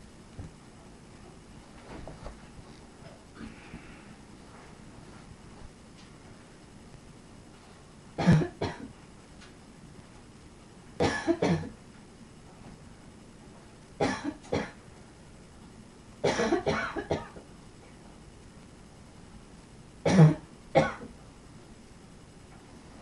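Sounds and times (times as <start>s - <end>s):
person barking cough: 8.2s - 8.9s, 11.0s - 11.7s, 16.2s - 17.4s, 20.1s - 21.1s.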